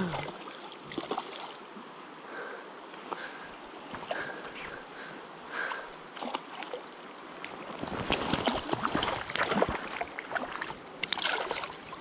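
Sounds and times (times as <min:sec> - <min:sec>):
creek water running: 0:00.0 - 0:12.0
fish splashing: 0:08.1 - 0:11.8.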